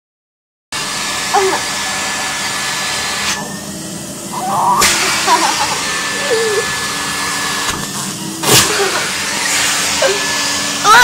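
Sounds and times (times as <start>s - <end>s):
vacuum cleaner whine: 0.8s - 11.0s
laughter-like voice bursts: 4.5s - 6.7s.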